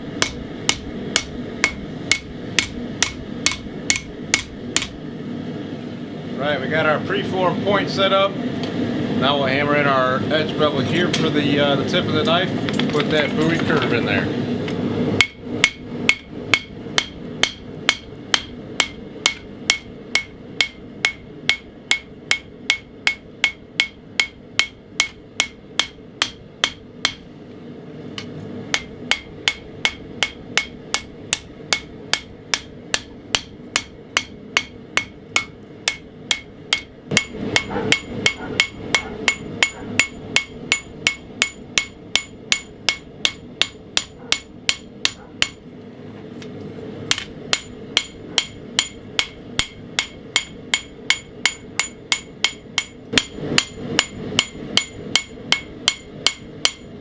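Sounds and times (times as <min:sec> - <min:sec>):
hammer striking steel on anvil: 0:00.2 - 0:05.0, 0:15.2 - 0:27.3, 0:28.2 - 0:45.6, 0:47.1 - 0:57.0.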